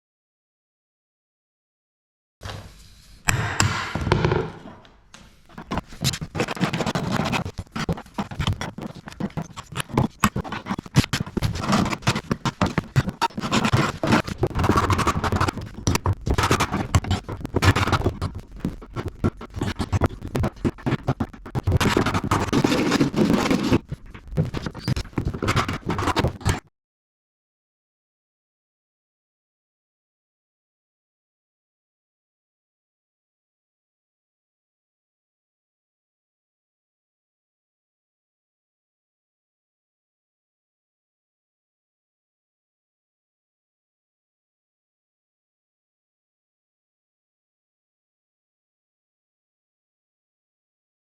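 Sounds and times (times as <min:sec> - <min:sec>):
tool scraping stairs: 0:02.4 - 0:06.1.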